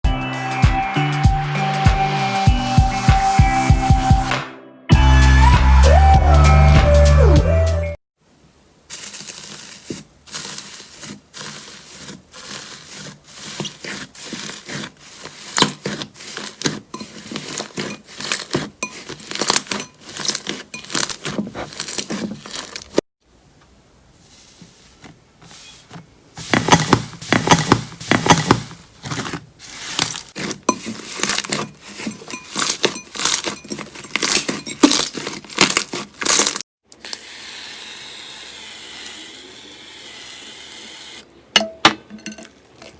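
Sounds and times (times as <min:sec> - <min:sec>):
slime crackling and popping: 0:29.8 - 0:36.6.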